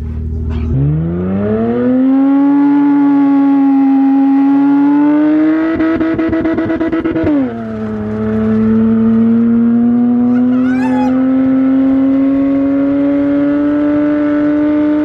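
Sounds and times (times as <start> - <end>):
car engine revving hard: 0.0 - 15.0.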